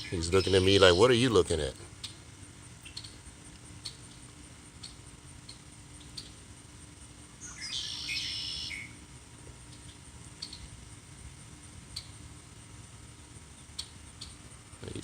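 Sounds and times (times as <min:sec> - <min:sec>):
bird chirping: 0:00.0 - 0:01.2, 0:07.4 - 0:08.9.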